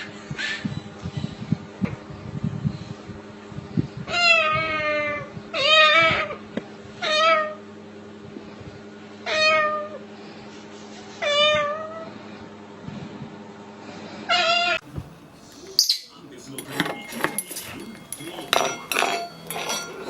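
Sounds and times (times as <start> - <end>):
cat meowing: 9.3 - 10.0, 11.2 - 12.0.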